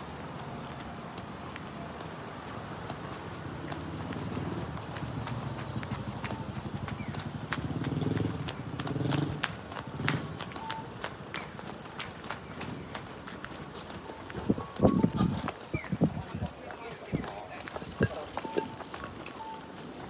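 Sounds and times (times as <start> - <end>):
footsteps clicking on pavement: 0.0 - 20.0
vehicle engine rumbling: 2.3 - 11.8.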